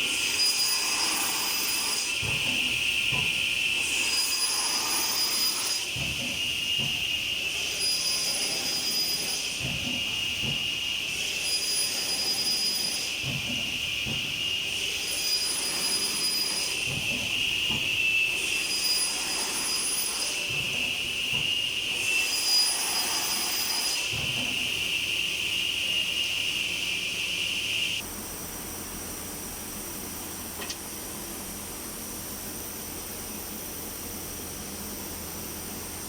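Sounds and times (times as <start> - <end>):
saw blade whine cutting wood: 0.0 - 28.0
machine running noise: 0.0 - 36.0.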